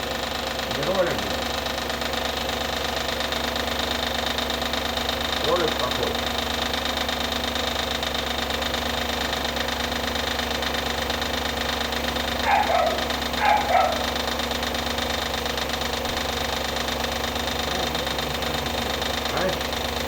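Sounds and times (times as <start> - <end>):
car engine idling with knock: 0.0 - 20.0
dog barking: 12.3 - 14.4.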